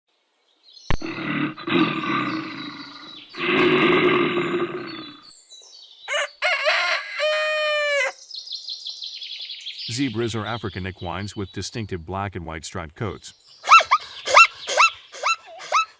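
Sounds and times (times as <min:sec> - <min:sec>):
long rough animal calls: 0:01.0 - 0:05.3, 0:13.6 - 0:15.9
clear held animal call: 0:06.1 - 0:08.2, 0:13.6 - 0:15.9
short wavering animal call: 0:13.6 - 0:15.9.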